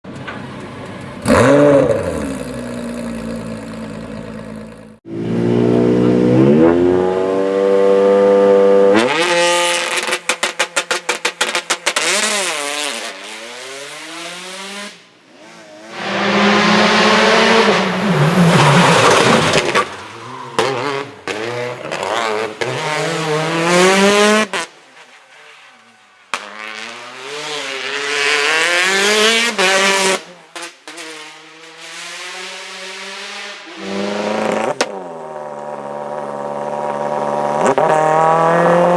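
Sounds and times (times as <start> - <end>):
rally car engines revving: 1.2 - 38.9
sharp exhaust pops and bangs: 9.7 - 12.5.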